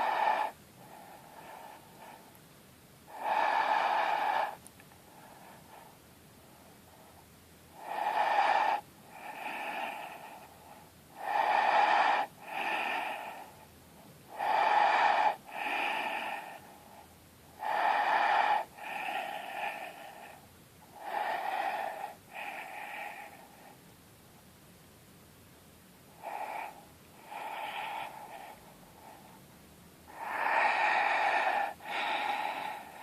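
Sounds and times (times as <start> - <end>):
person breathing deeply through throat: 0.0 - 2.4, 30.1 - 33.0.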